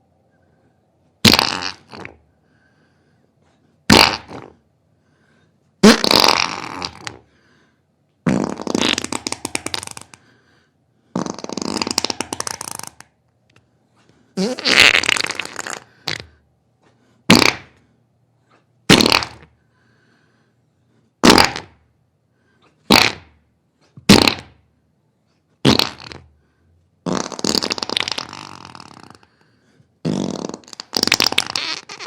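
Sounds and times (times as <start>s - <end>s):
farts: 1.2s - 2.2s, 3.9s - 4.6s, 5.8s - 7.2s, 8.2s - 10.2s, 11.1s - 13.1s, 14.4s - 16.4s, 17.3s - 17.8s, 18.9s - 19.5s, 21.2s - 21.8s, 22.8s - 23.4s, 24.0s - 24.6s, 25.6s - 26.3s, 27.0s - 29.3s, 30.0s - 32.0s.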